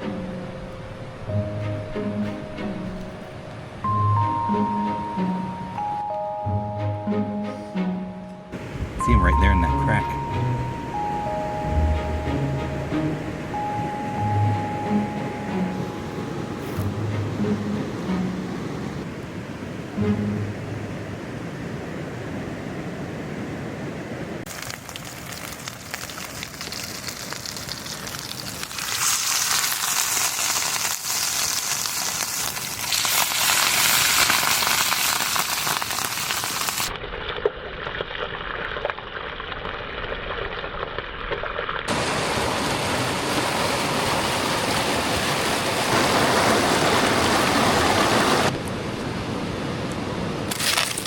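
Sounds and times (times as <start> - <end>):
fish sizzling in a pan: 24.5 - 36.9.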